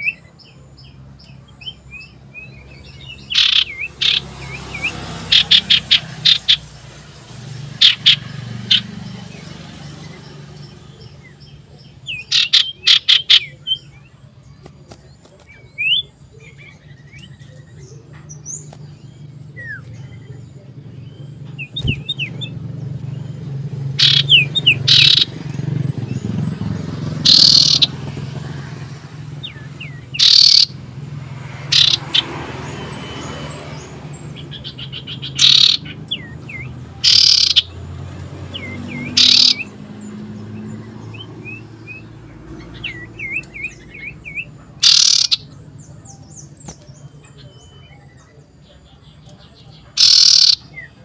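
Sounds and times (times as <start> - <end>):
bird calling in emphatic bursts: 1.6 - 14.0, 21.2 - 47.0, 49.9 - 51.0
soft bird chirps and whistles: 7.8 - 26.5, 27.2 - 28.2, 29.4 - 30.8, 31.7 - 32.3, 34.1 - 37.8, 38.5 - 51.0.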